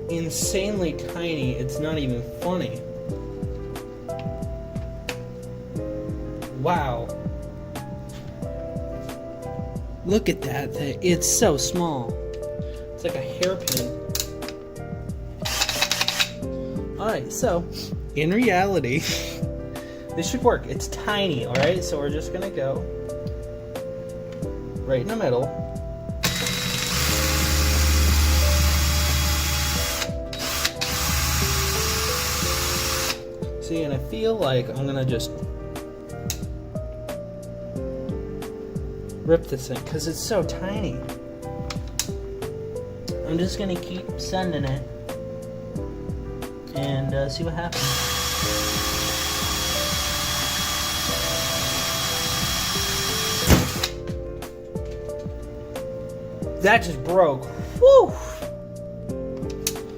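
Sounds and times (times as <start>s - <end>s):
background music: 0.0s - 59.9s
small power drill drilling: 15.4s - 16.4s, 26.2s - 33.2s, 47.7s - 54.0s.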